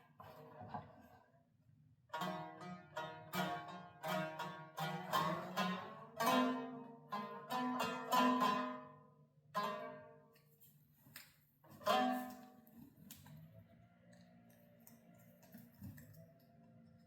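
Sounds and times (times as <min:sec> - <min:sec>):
plucked string instrument strumming: 0:02.1 - 0:10.2, 0:11.7 - 0:12.9.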